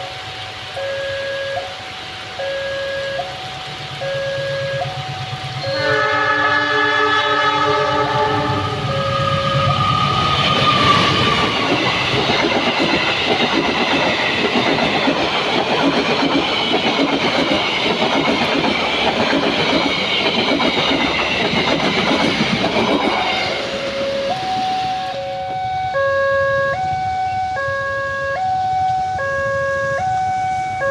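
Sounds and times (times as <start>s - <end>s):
level-crossing alarm two-note tones: 0.1s - 1.8s, 2.4s - 11.6s, 22.9s - 30.9s
train horn chord: 4.0s - 10.1s
train wheels clattering over joints: 9.4s - 24.6s.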